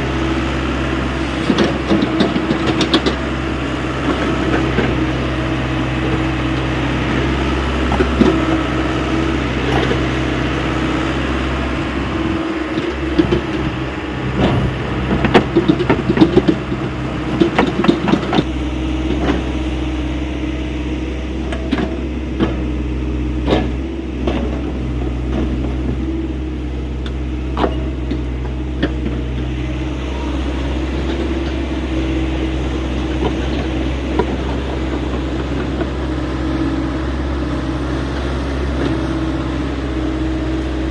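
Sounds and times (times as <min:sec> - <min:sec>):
excavator diesel engine running: 0:00.0 - 0:40.9
clanks and rattles: 0:12.7 - 0:18.5.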